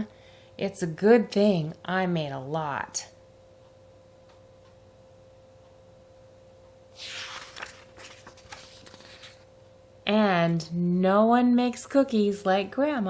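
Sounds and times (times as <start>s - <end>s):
faint steady hum: 0.0s - 13.0s
paper page turning: 7.0s - 9.5s.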